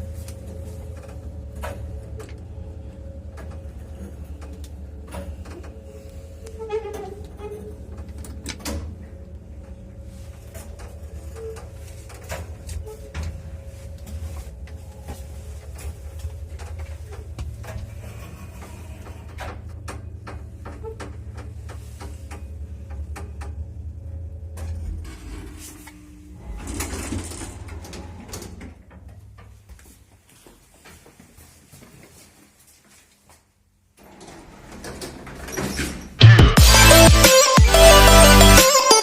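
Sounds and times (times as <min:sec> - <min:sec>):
lift cabin humming: 0:00.0 - 0:29.6
cabin creaks and clicks: 0:03.3 - 0:09.8, 0:15.6 - 0:23.6, 0:24.6 - 0:29.8, 0:34.0 - 0:36.3.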